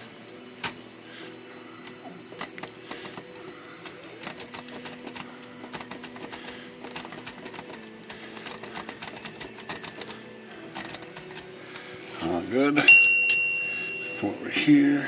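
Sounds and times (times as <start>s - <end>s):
manual typewriter keys clacking: 2.4s - 11.5s.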